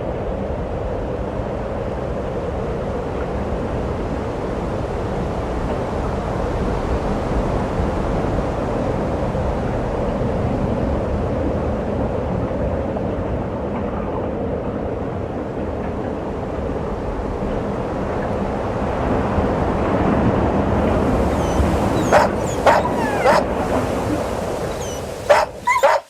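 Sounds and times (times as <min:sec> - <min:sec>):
wind blowing over microphone: 0:16.4 - 0:26.0.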